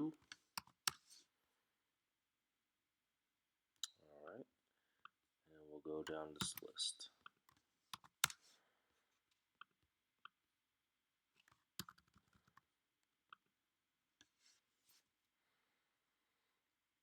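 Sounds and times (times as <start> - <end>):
keyboard and mouse clicking: 0.2 - 1.0, 6.1 - 6.7, 7.5 - 8.5, 11.4 - 12.6.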